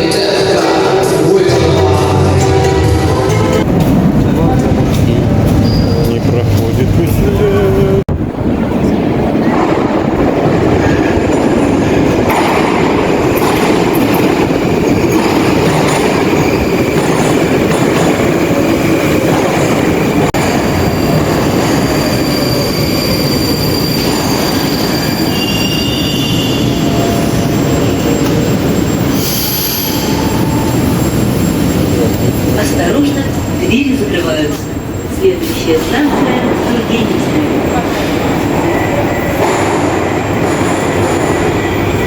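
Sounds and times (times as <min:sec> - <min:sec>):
train rumbling on rails: 0:00.0 - 0:42.0
high-pitched wheel squeal: 0:05.6 - 0:06.2, 0:20.5 - 0:33.0.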